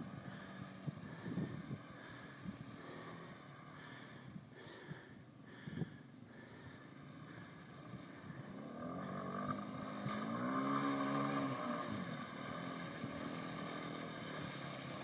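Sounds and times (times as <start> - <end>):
vehicle engine revving: 6.9 - 15.0.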